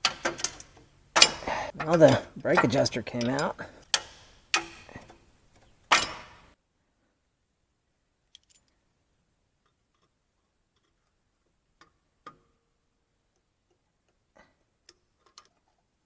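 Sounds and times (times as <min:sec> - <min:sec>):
metallic clicks and taps: 0:00.0 - 0:06.1.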